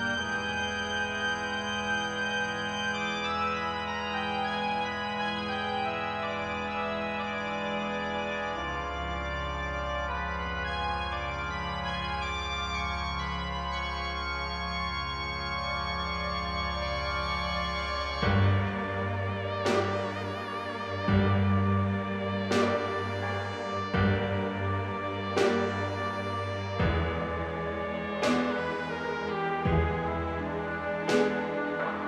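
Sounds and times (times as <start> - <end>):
music of long-held chords: 0.0 - 32.0
deep bass note: 18.2 - 31.6.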